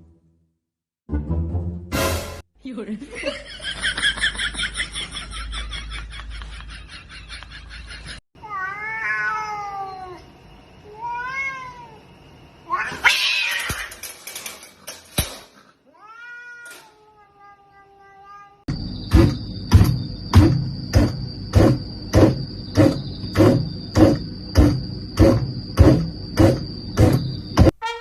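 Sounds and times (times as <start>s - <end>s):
cat harsh cry: 8.4s - 10.2s, 10.8s - 12.0s, 12.7s - 14.0s, 15.8s - 18.7s
cat meowing: 8.4s - 10.2s, 10.8s - 12.0s, 12.7s - 13.9s, 15.9s - 18.7s.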